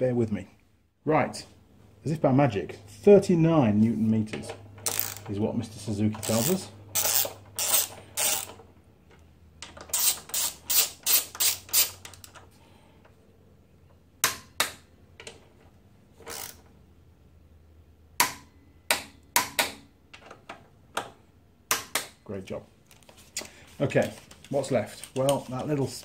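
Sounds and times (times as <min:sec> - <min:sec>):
torque wrench ratcheting clicks: 0:04.8 - 0:05.3, 0:06.2 - 0:08.6, 0:09.9 - 0:12.4.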